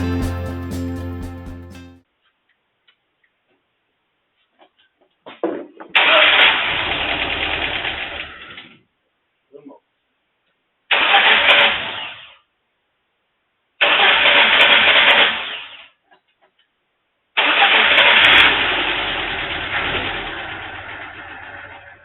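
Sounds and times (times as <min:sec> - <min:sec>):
engine cranking on starter: 0:13.8 - 0:15.6, 0:17.4 - 0:22.0.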